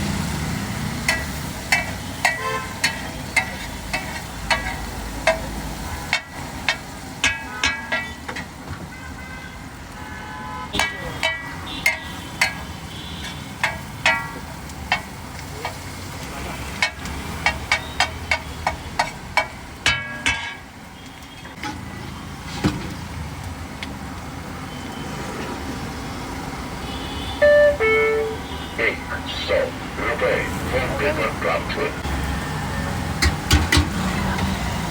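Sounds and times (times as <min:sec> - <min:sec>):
street traffic: 0:00.0 - 0:34.9
car horns tooting: 0:02.0 - 0:03.1, 0:07.4 - 0:13.9, 0:26.8 - 0:31.6.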